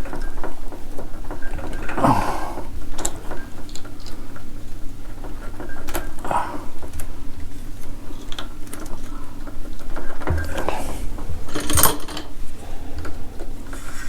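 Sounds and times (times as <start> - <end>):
steady low hum: 0.0 - 14.0
hands handling wiring connectors: 8.1 - 14.0.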